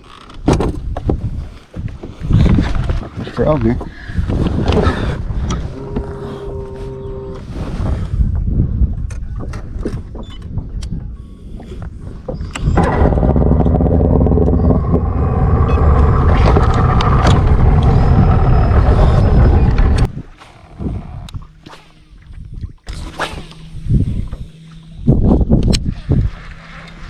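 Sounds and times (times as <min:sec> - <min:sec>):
outboard motor running: 0:03.4 - 0:08.2, 0:11.1 - 0:27.0
low rumble: 0:04.4 - 0:08.6, 0:12.4 - 0:27.0
scattered knocks: 0:12.8 - 0:20.1.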